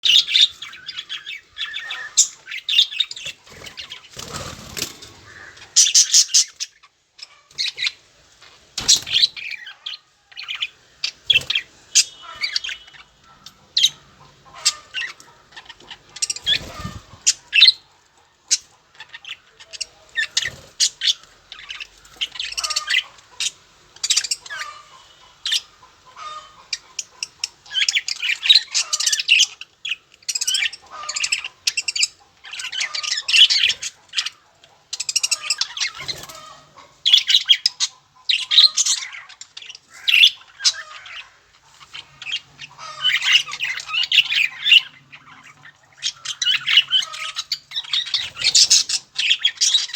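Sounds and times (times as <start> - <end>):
budgerigars chirping: 0.0 - 49.9
wing flaps rustling: 3.4 - 5.5.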